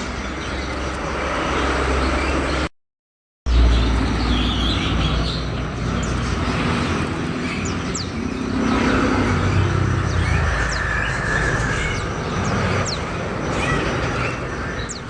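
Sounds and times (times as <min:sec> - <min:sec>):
small birds chirping: 0:00.0 - 0:02.7, 0:03.5 - 0:15.0
traffic rumble: 0:03.5 - 0:15.0.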